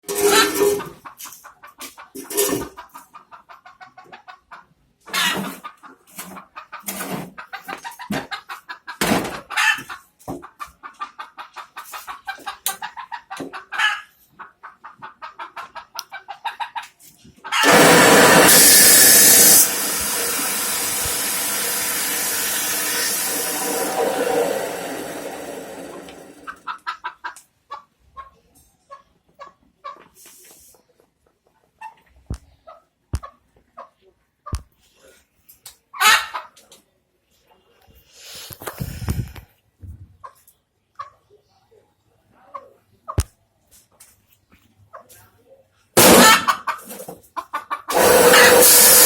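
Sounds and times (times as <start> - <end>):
chickens clucking: 0.1 - 17.9, 25.4 - 37.9, 39.8 - 48.6
loud steady noise: 17.6 - 26.4, 46.0 - 46.5, 47.9 - 49.0.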